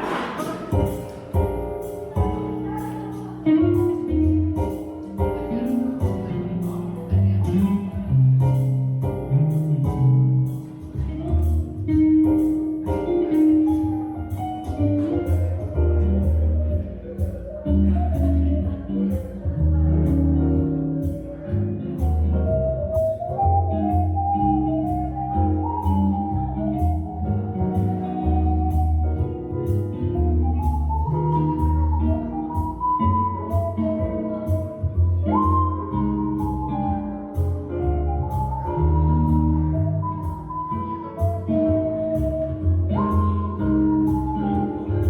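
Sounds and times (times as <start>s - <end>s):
drum hits: 0.0s - 2.4s
bass line: 0.0s - 45.0s
live instrumental band music: 0.0s - 45.0s.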